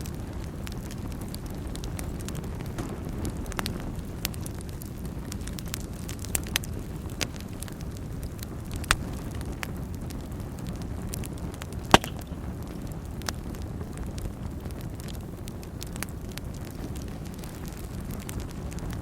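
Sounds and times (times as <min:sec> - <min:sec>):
fire crackling and popping: 0:00.0 - 0:19.0
fire flames rumbling: 0:00.0 - 0:19.0.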